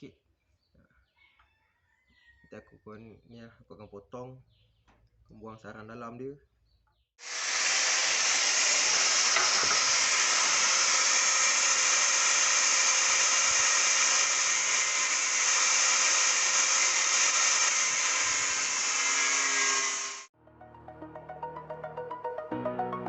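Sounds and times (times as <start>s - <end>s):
angle grinder cutting steel: 7.2s - 20.3s.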